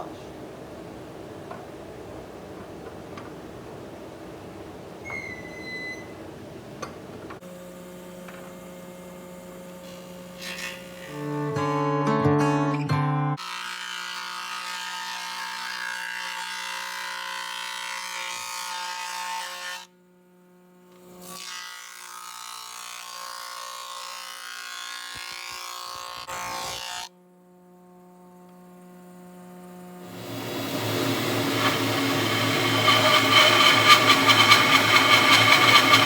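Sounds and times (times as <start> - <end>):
thickness planer motor whine: 29.8 - 36.0.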